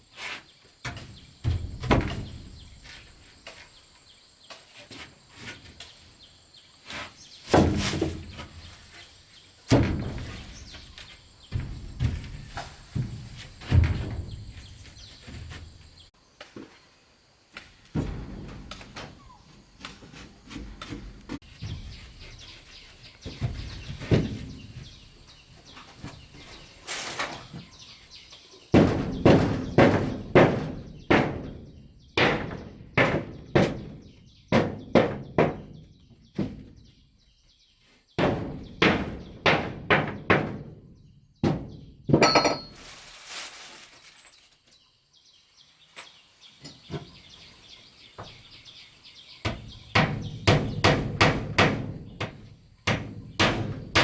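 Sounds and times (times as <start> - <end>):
hand tool striking wood: 49.4 - 54.0.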